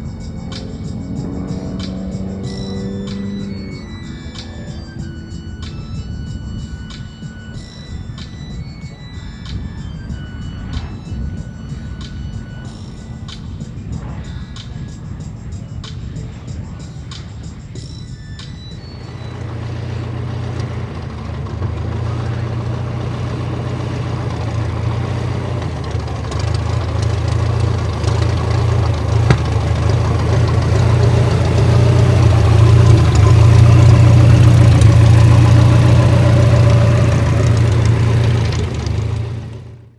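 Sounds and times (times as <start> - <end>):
propeller plane engine: 0.0 - 39.9.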